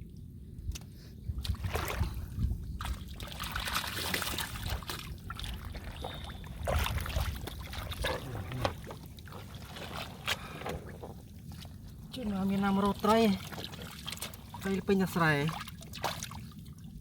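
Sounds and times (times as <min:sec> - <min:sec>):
muddy water sloshing and splashing: 0:01.3 - 0:17.0.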